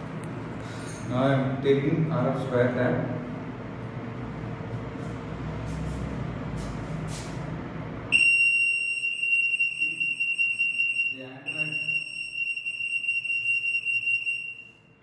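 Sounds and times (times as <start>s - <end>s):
alarm buzzer high tone: 8.1s - 15.0s.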